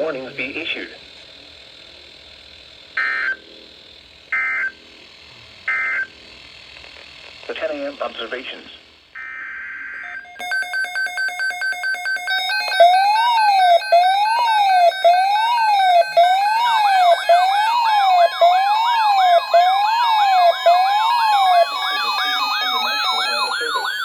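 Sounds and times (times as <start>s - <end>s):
fast pulsing siren beep: 10.0s - 24.0s
slowly rising siren tone: 10.1s - 24.0s
fast siren yelp: 10.4s - 24.0s
rising and falling siren wail: 11.8s - 24.0s.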